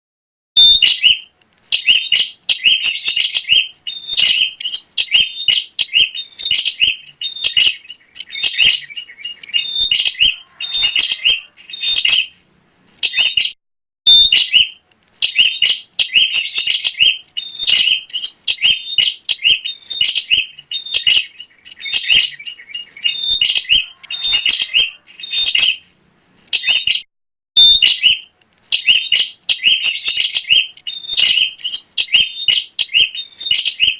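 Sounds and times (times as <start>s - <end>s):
bird chirping: 0.6s - 27.0s, 27.6s - 33.9s.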